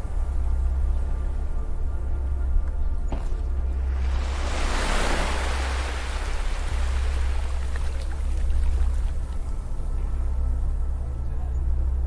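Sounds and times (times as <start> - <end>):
low drone: 0.0 - 12.0
ocean wave washing: 3.8 - 9.4.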